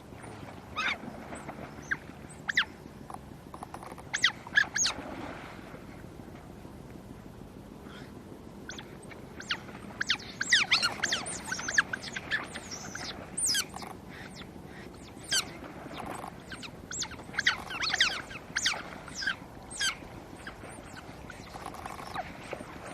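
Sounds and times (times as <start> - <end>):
otters squealing and chirping: 9.4 - 14.4, 15.0 - 22.2.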